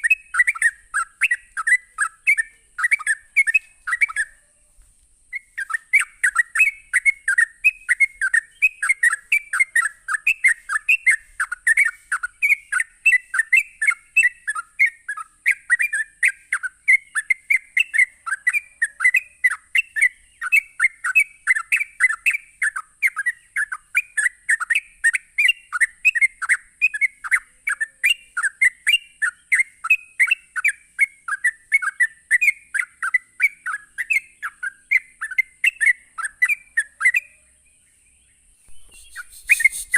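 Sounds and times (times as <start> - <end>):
bulbul singing quick whistles: 0.0 - 4.4, 5.3 - 37.4, 38.6 - 39.9
faint high hiss: 0.0 - 18.0, 37.6 - 39.9.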